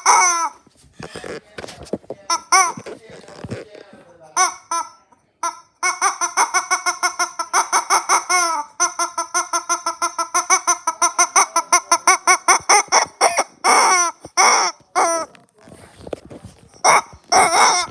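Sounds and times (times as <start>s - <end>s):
chicken clucking: 16.4s - 17.9s
chicken squawks: 16.8s - 17.9s.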